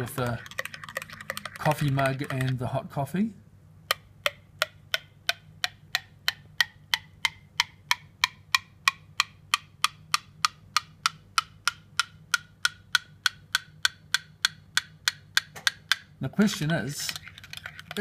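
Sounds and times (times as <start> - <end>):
spoon tapping a mug: 0.1 - 2.6.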